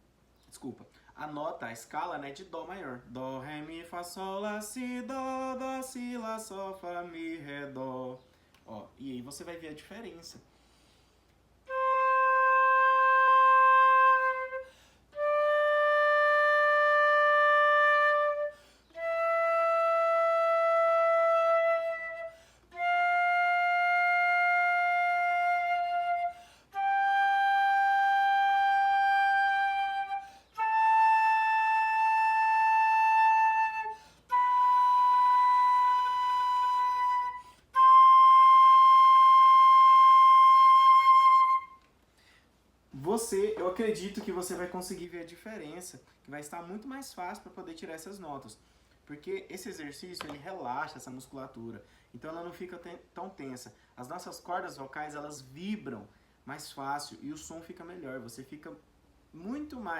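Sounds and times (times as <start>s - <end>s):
flute playing a scale: 11.7s - 41.9s.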